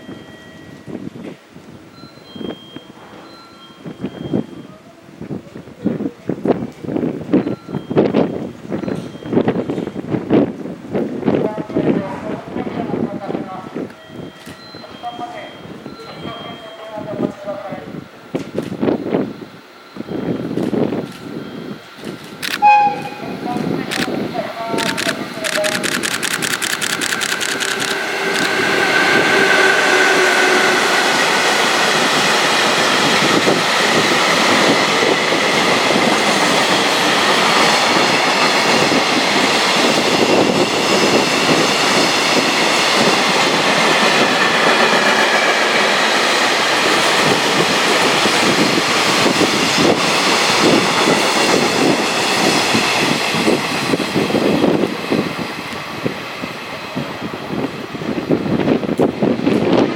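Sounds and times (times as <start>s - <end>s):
train wheels rolling on rails: 0.0s - 59.9s
clickety-clack over rail joints: 58.6s - 59.9s.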